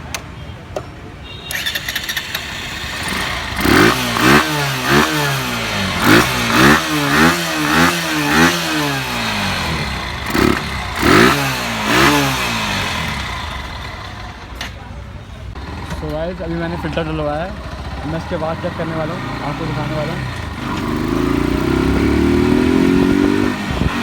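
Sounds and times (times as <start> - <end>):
motorcycle engine revving: 1.5 - 14.6, 15.5 - 24.0.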